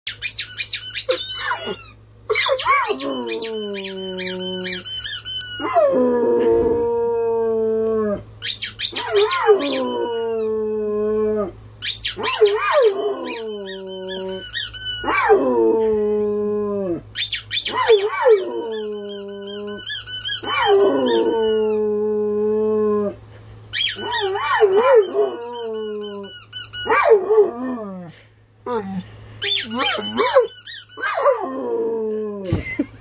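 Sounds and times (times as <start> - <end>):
squeaky toy squeaking: 0.1 - 5.8, 8.4 - 10.4, 11.8 - 15.2, 17.2 - 21.8, 23.7 - 27.0, 29.4 - 31.2
dog howling: 8.9 - 11.5, 12.2 - 14.4, 20.4 - 23.2.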